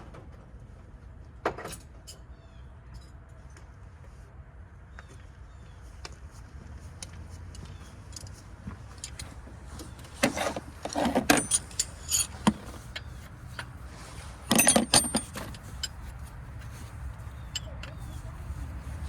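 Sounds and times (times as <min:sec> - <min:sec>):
metal tools clinking and rattling: 0:08.1 - 0:19.0.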